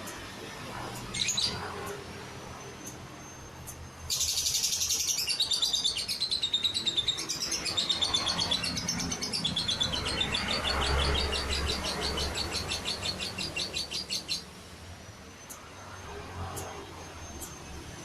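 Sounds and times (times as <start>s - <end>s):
bird chattering trill: 4.1s - 14.5s.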